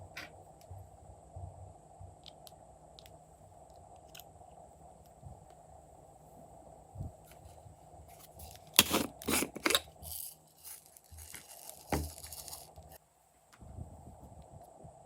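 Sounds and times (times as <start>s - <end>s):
faint crinkling: 7.2s - 13.0s.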